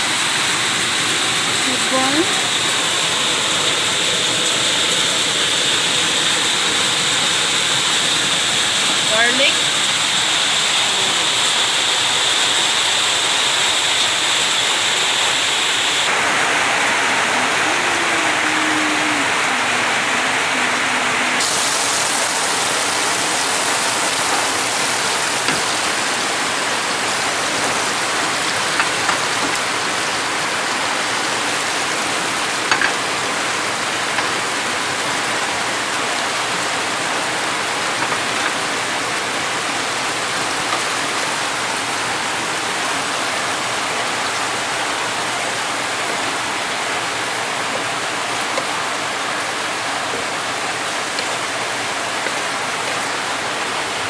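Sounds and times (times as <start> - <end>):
oil popping and crackling: 20.8 - 34.8
food sizzling in hot oil: 21.4 - 34.4.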